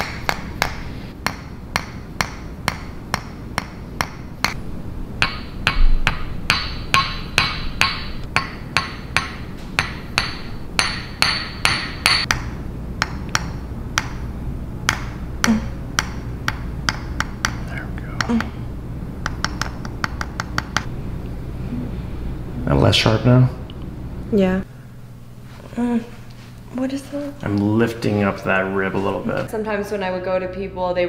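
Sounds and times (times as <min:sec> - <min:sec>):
low background hum: 0:00.0 - 0:31.0
sharp knocks: 0:05.2 - 0:18.6.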